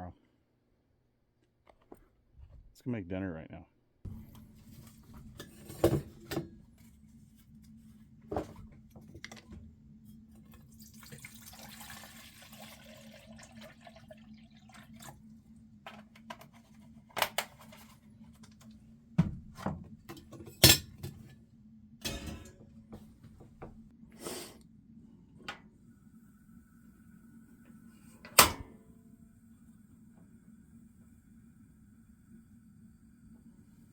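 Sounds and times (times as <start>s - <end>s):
dishes clinking and knocking: 5.2s - 6.5s, 19.2s - 21.2s, 22.0s - 23.1s.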